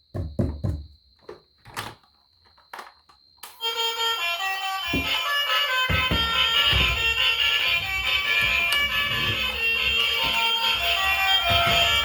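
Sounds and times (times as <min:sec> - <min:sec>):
music: 0:03.5 - 0:12.0
sharp knocks: 0:04.9 - 0:05.2, 0:05.9 - 0:12.0.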